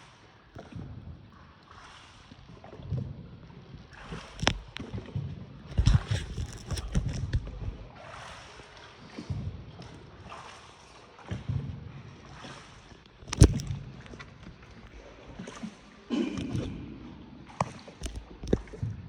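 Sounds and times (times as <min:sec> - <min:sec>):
paddles swishing through water: 0:01.6 - 0:19.0.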